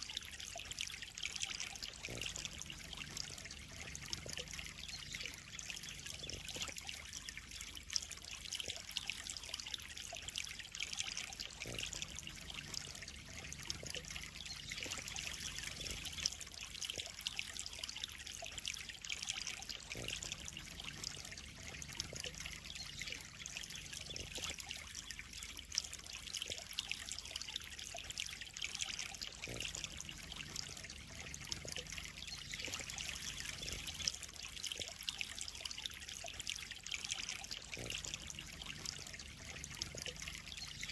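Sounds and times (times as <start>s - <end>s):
water splashing into pond: 0.0s - 40.9s.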